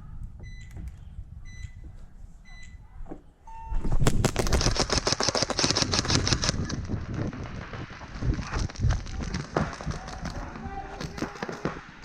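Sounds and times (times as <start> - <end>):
electronic timer beeping: 1.5 - 1.8.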